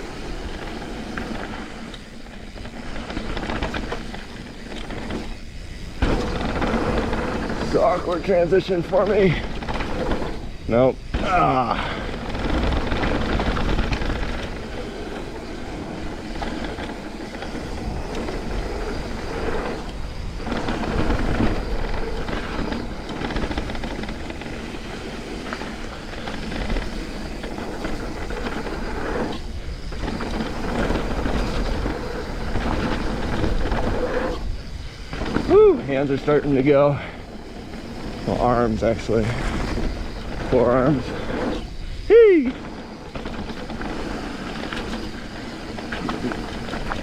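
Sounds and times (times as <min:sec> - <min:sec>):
bike rattling: 0:00.0 - 0:47.0
bike tyre rumble: 0:00.0 - 0:47.0
wind on microphone: 0:37.2 - 0:47.0.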